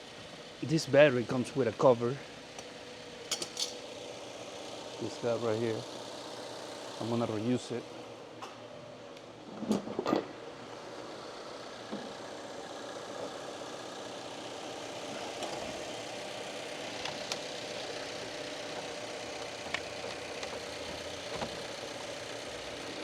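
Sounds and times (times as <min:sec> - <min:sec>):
car engine idling: 0:11.6 - 0:23.0.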